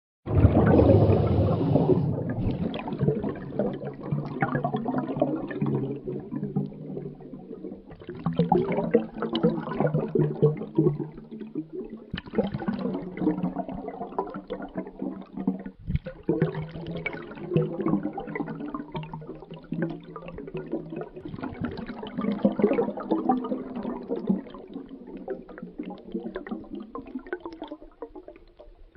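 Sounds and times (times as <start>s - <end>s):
bubbles underwater: 0.3s - 28.9s.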